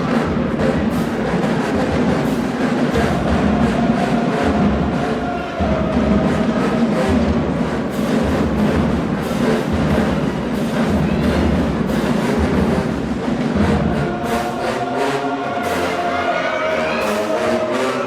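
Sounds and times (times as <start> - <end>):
brass sustained chords: 0.0 - 18.0
marching drum beat: 0.0 - 18.0.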